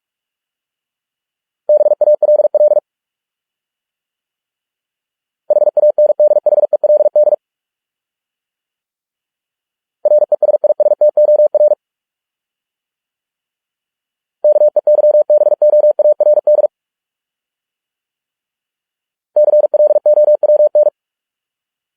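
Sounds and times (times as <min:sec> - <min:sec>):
morse code beeps: 0:05.5 - 0:07.4, 0:10.1 - 0:11.8, 0:14.5 - 0:16.7, 0:19.4 - 0:20.9.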